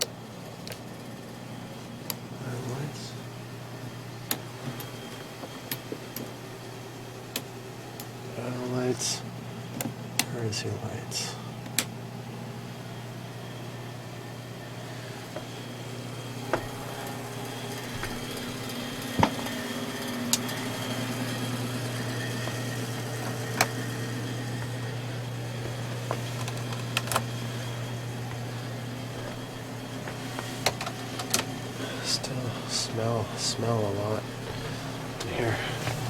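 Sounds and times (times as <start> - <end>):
low motor hum: 11.3 - 36.0.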